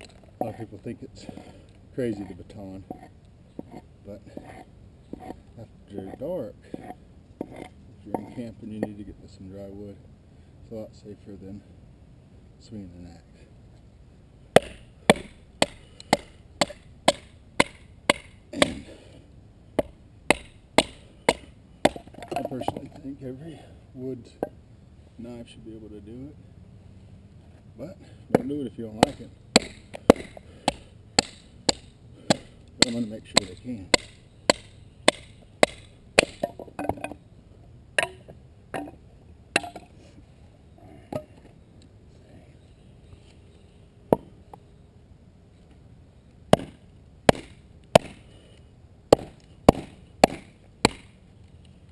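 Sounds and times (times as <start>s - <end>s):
baton knocking knife spine: 28.4s - 37.0s.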